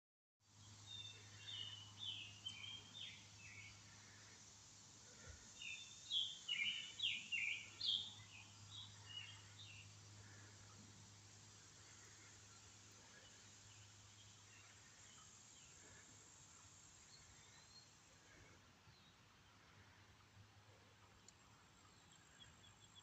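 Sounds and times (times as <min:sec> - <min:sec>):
faint low hum: 0:00.5 - 0:23.0
songbird chirping: 0:00.5 - 0:23.0.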